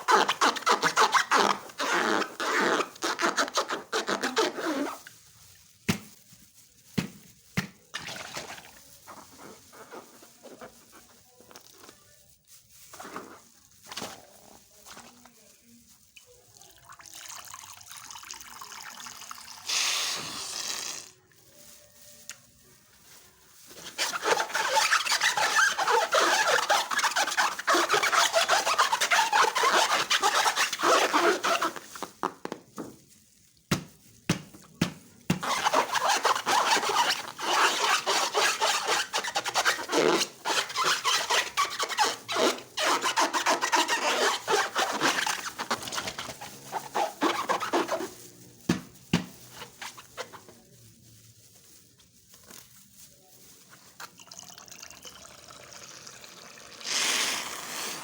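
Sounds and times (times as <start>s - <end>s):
slime squishing and crackling: 0.0s - 16.5s.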